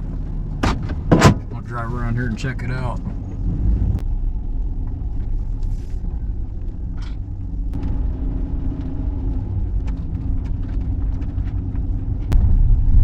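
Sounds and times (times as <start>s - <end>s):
vehicle engine and tyres rumbling: 0.0s - 13.0s
faint clicks and rattles: 8.6s - 12.6s.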